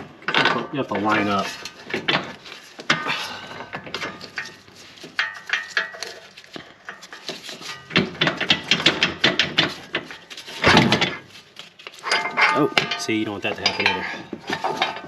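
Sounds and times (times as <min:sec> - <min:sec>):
metal parts clinking and scraping: 0:00.0 - 0:15.0
sharp metal knocks ringing: 0:12.1 - 0:15.0.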